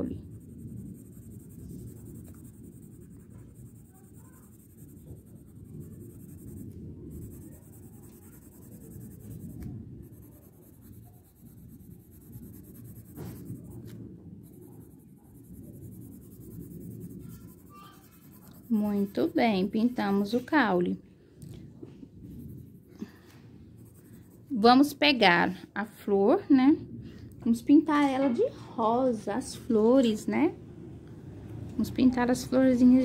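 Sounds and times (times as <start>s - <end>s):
drawing tool scratching on paper: 0.0s - 20.6s, 23.8s - 24.7s.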